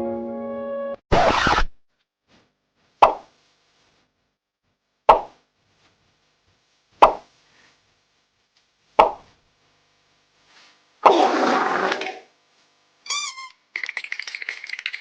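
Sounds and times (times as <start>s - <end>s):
short plop sound effects: 5.1s - 5.3s, 7.0s - 7.2s, 9.0s - 9.2s.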